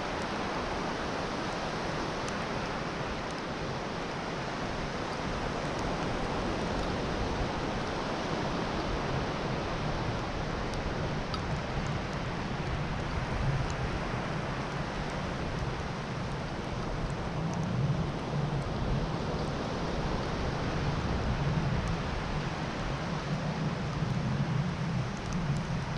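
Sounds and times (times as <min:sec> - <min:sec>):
sea surf: 0:00.0 - 0:17.0
wind: 0:00.0 - 0:25.9.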